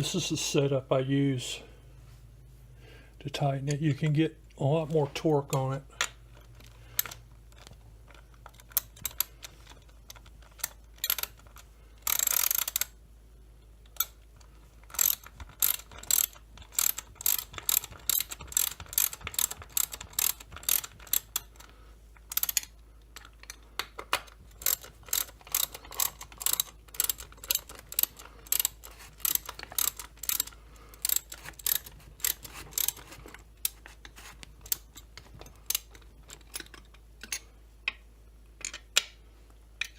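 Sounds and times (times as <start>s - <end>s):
socket ratchet clicking: 8.1s - 13.0s, 13.9s - 37.5s.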